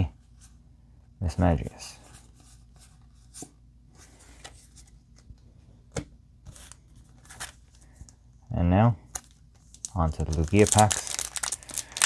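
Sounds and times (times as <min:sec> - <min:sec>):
trading cards rustling: 0:09.2 - 0:12.0.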